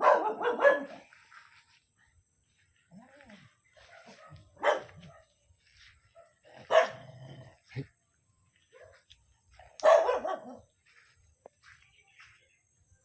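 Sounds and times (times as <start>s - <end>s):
dog barking: 0.0s - 1.1s, 3.8s - 5.4s, 6.1s - 7.3s, 8.7s - 9.1s, 9.8s - 10.6s.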